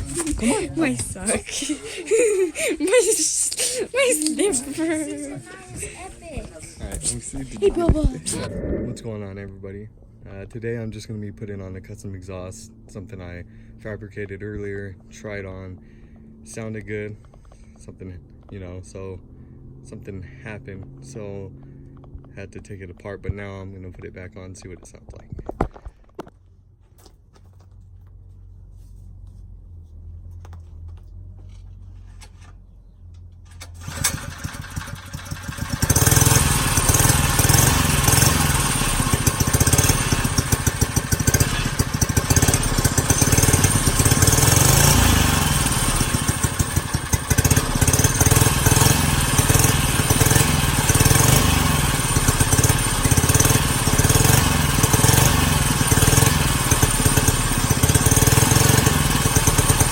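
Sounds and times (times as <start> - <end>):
small engine starting and running: 0.0 - 9.0, 33.2 - 59.9
faint low rumble: 4.7 - 25.6.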